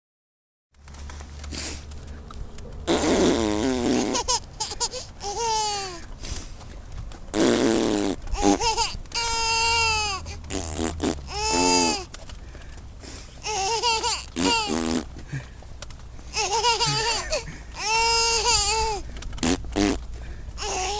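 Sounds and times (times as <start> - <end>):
person blowing raspberries: 1.5 - 1.9, 2.8 - 5.0, 7.3 - 9.3, 10.3 - 12.1, 14.2 - 15.5, 16.8 - 20.9
baby squealing with laughter: 2.9 - 6.0, 8.4 - 10.4, 11.2 - 12.1, 13.4 - 15.0, 16.3 - 19.6, 20.6 - 20.9
baby babbling: 4.0 - 6.0, 8.3 - 10.4, 11.3 - 12.1, 13.4 - 14.8, 16.3 - 19.0, 20.6 - 20.9.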